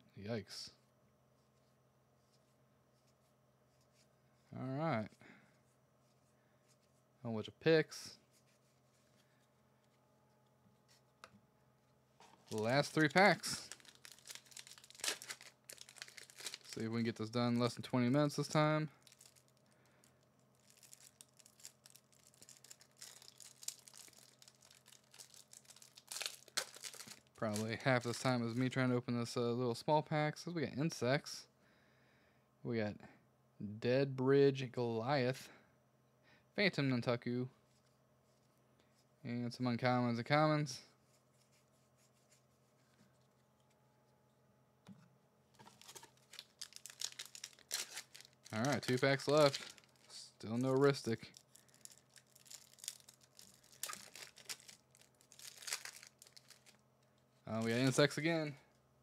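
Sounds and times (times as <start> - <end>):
faint steady hum: 0.0 - 59.0
plastic wrapper crinkling and tearing: 12.4 - 28.3, 45.6 - 56.8.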